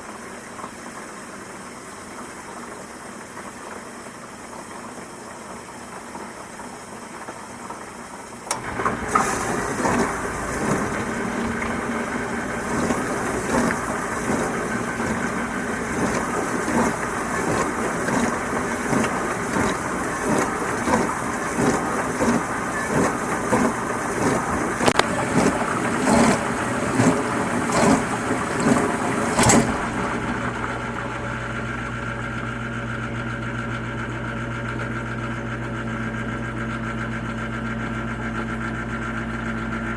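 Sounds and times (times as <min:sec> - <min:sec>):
dishwasher churning and splashing: 0:00.0 - 0:32.1
low motor hum: 0:08.5 - 0:39.9.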